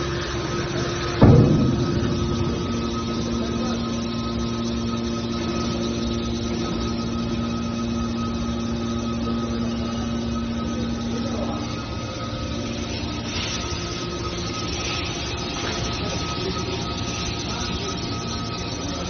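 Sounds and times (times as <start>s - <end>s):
hydraulic baler machinery humming: 0.0s - 19.0s
metal impact: 1.2s - 6.3s.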